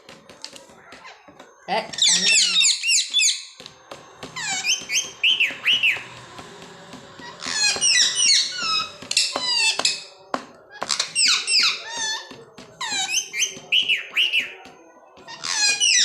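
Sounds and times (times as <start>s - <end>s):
parrots calling shrilly: 1.9s - 3.5s, 4.4s - 6.1s, 7.3s - 10.0s, 10.8s - 14.5s, 15.3s - 16.0s.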